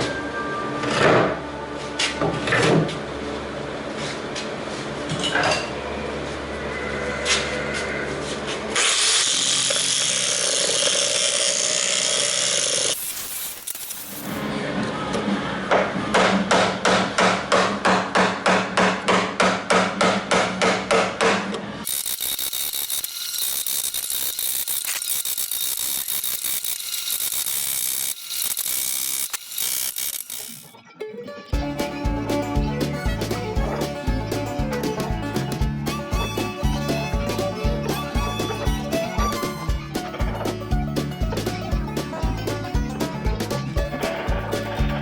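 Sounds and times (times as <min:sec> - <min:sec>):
power tool noise: 0:08.7 - 0:14.5, 0:21.8 - 0:30.8.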